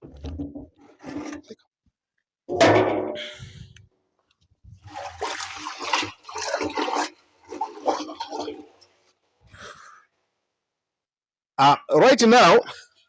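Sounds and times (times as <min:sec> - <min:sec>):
liquid sloshing in a container: 0:04.6 - 0:09.2.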